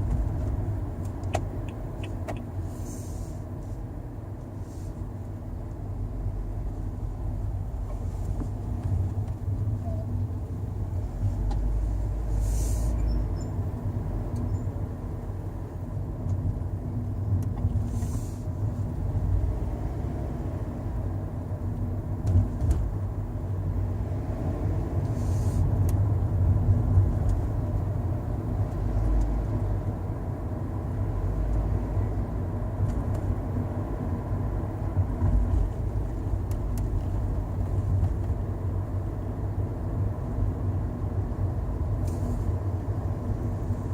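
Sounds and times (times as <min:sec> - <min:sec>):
road and engine rumble in car: 0:00.0 - 0:43.9.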